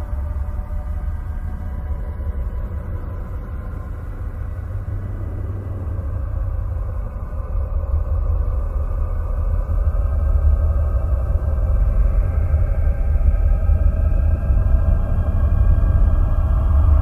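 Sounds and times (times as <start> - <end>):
faint even drones: 0.0 - 13.1
steady deep rumble: 0.0 - 17.0.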